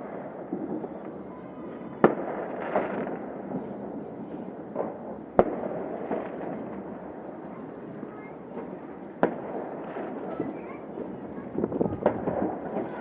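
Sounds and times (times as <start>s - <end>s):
firework bangs: 0.0s - 13.0s
fireworks crackling: 0.0s - 13.0s.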